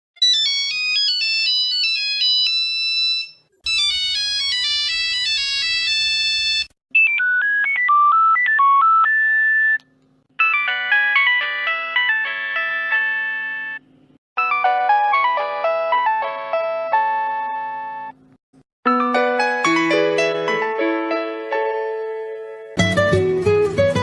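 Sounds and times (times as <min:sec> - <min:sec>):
mobile phone ringtone melodies: 0:00.2 - 0:09.8, 0:10.4 - 0:13.8, 0:14.4 - 0:18.2.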